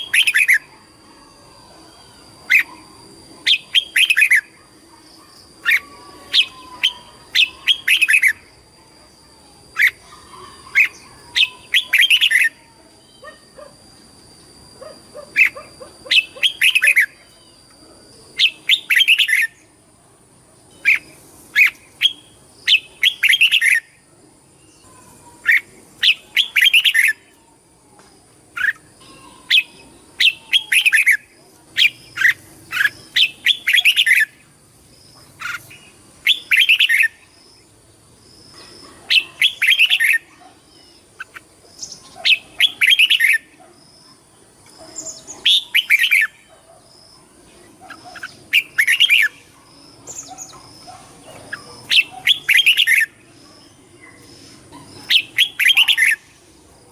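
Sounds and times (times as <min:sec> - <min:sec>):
bird chirping: 0:00.0 - 0:19.7, 0:20.7 - 0:24.0, 0:24.6 - 0:27.6, 0:28.5 - 0:56.9.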